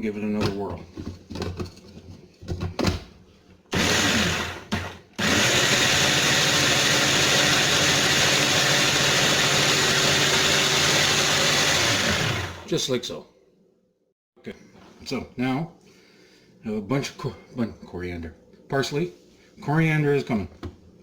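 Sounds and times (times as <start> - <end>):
food processor motor running: 3.7 - 12.7.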